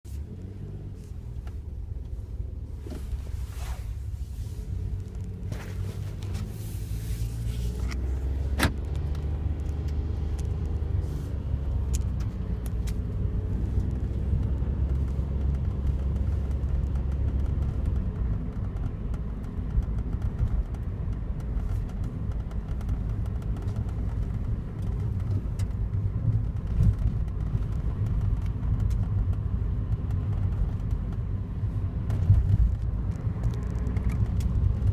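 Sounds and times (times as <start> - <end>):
car engine rumbling: 0.0 - 34.9
sharp clicks and ticks: 13.8 - 31.4, 32.0 - 34.9.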